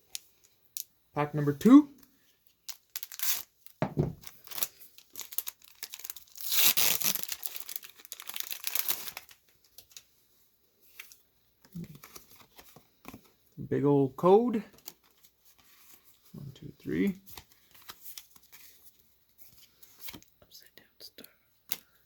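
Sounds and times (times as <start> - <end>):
wrapper crinkling and rustling: 2.5 - 10.1, 14.6 - 16.4, 17.2 - 20.3
foil pack tearing: 2.7 - 3.5, 4.2 - 9.4.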